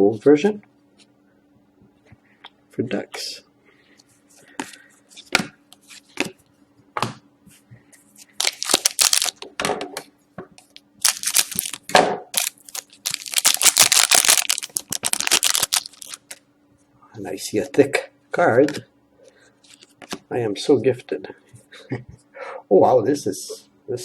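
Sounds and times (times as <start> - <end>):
cards clicking: 8.4 - 9.4
foil wrapper tearing and crinkling: 8.4 - 9.5, 11.0 - 16.4.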